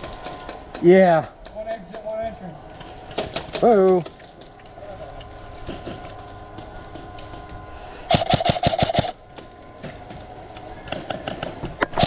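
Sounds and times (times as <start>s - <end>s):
motor whine: 4.7s - 12.0s
airsoft gun full-auto burst: 8.1s - 9.2s.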